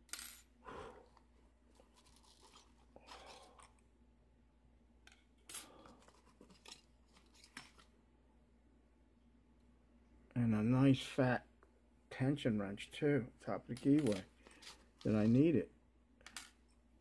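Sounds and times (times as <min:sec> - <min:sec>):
packaging rustling: 0:01.7 - 0:03.6.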